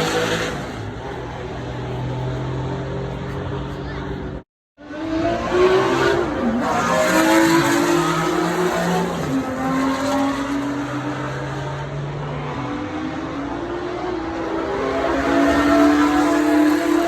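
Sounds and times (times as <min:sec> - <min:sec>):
car engine revving hard: 0:04.8 - 0:17.0.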